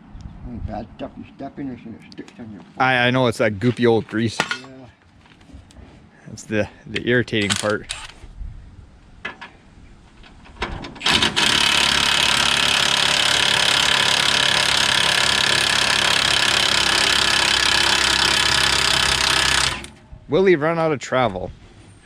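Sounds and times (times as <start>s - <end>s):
tools handling knocks: 4.1s - 4.8s
power tool running: 11.0s - 20.0s.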